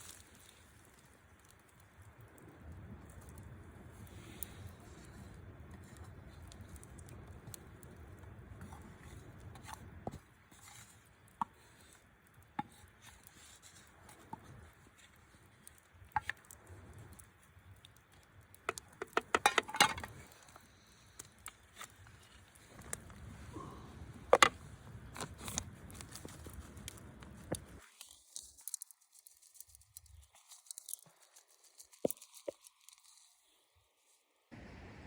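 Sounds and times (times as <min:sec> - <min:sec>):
low rumbling noise: 0:34.5 - 0:35.0.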